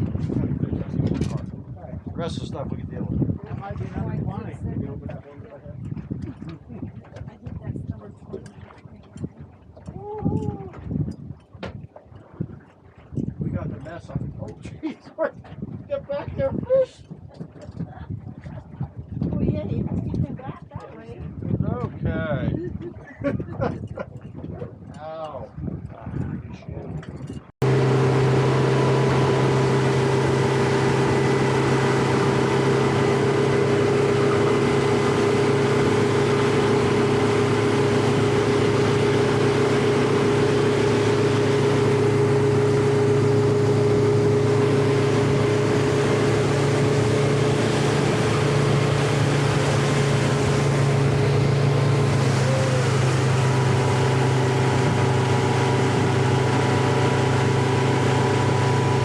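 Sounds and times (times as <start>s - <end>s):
motorboat engine droning: 27.2s - 59.0s.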